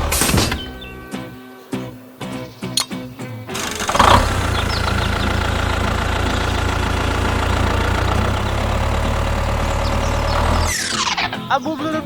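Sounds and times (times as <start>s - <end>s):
engine idling with whine: 3.5s - 11.1s.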